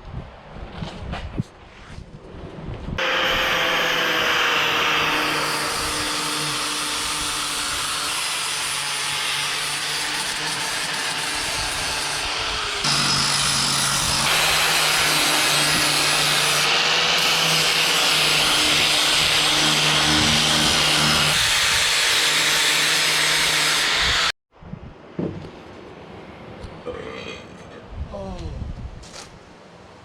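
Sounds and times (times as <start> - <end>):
angle grinder grinding metal: 3.0 - 24.3.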